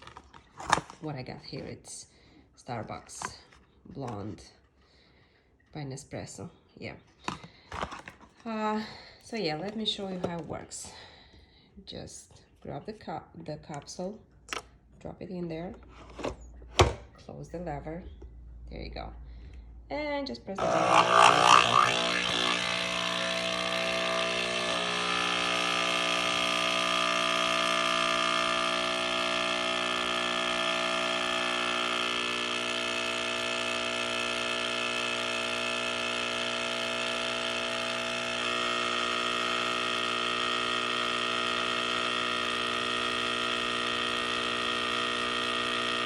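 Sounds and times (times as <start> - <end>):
espresso machine pump buzzing: 20.6 - 46.0.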